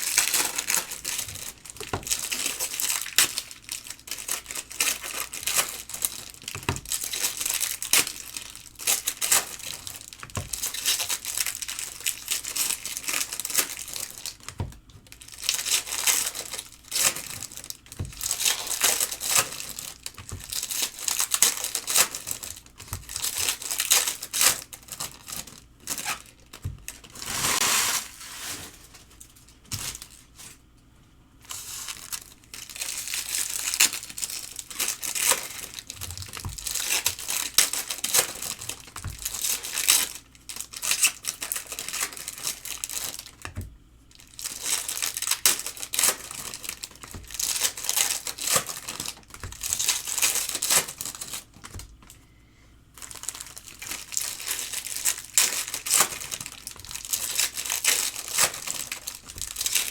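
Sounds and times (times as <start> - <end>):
foil wrappers crinkling and tearing: 0.0 - 30.7, 31.4 - 52.2, 52.9 - 59.9.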